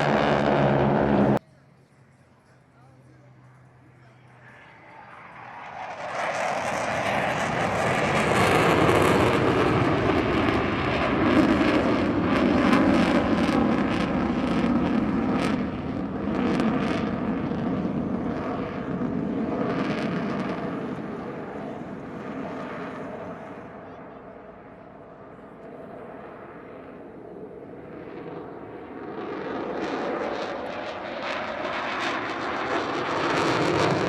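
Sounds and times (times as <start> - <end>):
airplane flying low past: 0.0 - 34.0.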